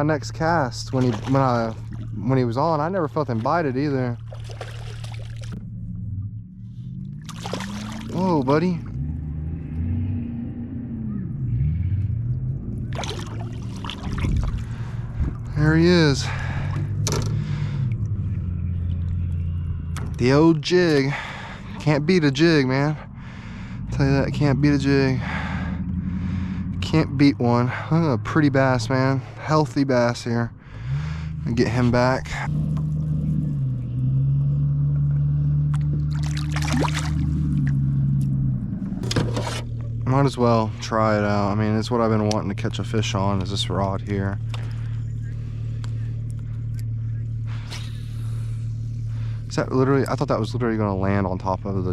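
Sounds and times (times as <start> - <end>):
boat motor humming: 0.0 - 51.9
fish splashing at surface: 0.9 - 2.1, 4.2 - 5.6, 7.2 - 8.2, 12.9 - 14.9, 35.8 - 37.8.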